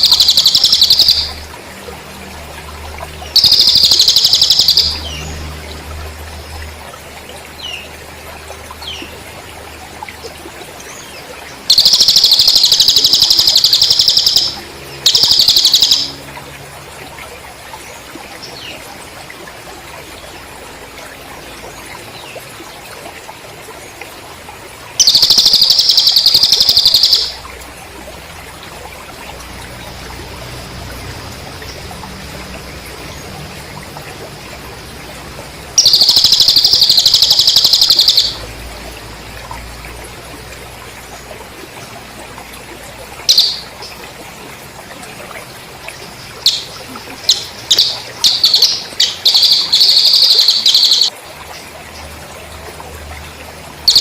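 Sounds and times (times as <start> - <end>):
bird trilling: 0.0 - 1.4, 3.4 - 5.2, 11.7 - 16.2, 25.0 - 27.4, 35.8 - 38.4, 43.3 - 43.8, 46.3 - 51.1.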